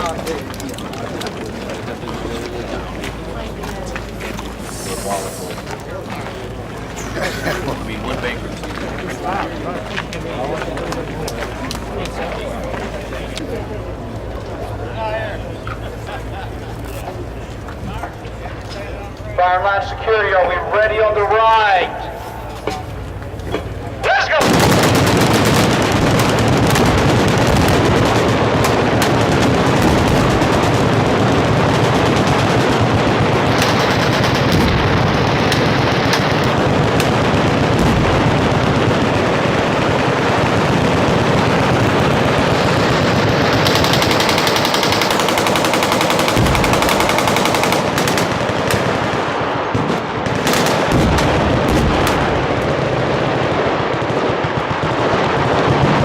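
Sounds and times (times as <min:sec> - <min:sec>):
automatic machine gun fire: 0:24.0 - 0:56.0.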